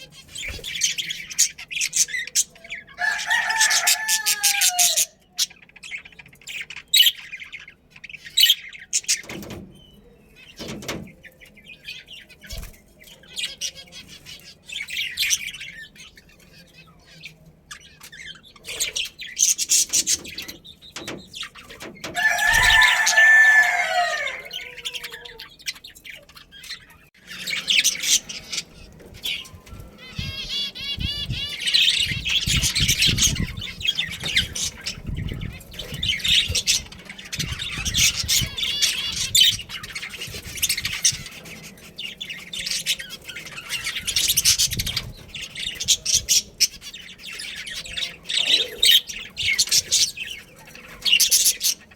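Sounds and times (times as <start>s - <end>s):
budgerigars chirping and chattering: 0.0s - 51.9s
wings fluttering: 19.7s - 24.9s.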